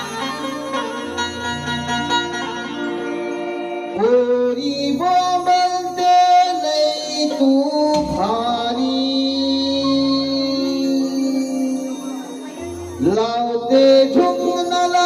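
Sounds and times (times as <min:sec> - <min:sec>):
held melody notes: 0:00.0 - 0:15.0
drum strokes: 0:07.9 - 0:09.5.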